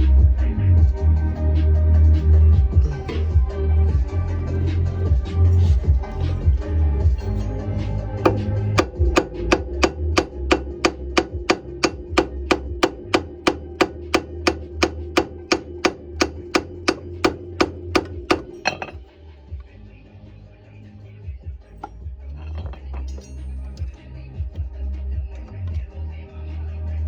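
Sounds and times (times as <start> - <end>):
electronic music: 0.0 - 19.6.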